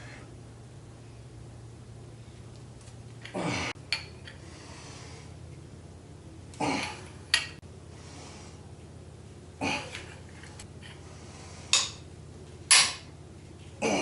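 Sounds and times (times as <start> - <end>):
hard breaths of effort: 3.2 - 3.8.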